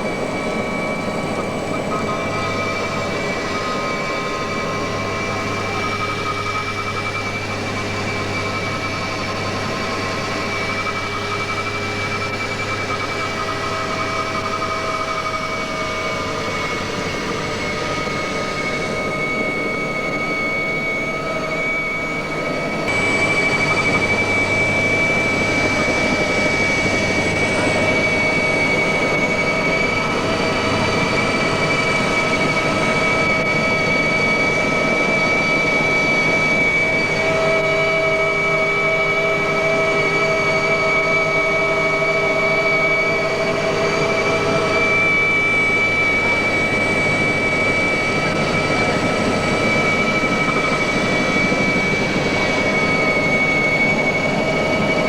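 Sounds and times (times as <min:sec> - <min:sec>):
helicopter engine whine: 0:00.0 - 0:55.0.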